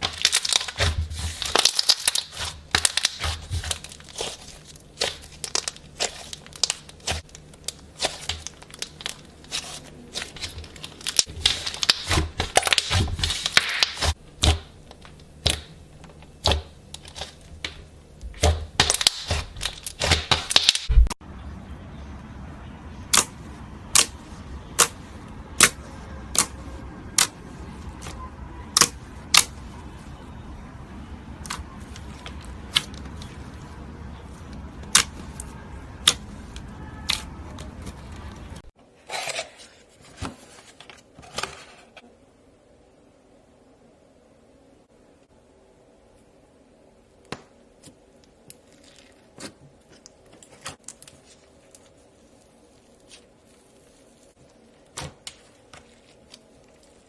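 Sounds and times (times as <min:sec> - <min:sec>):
slime popping and crackling: 0:00.0 - 0:15.7, 0:18.4 - 0:21.0, 0:31.4 - 0:37.7
steady hum: 0:20.9 - 0:38.7.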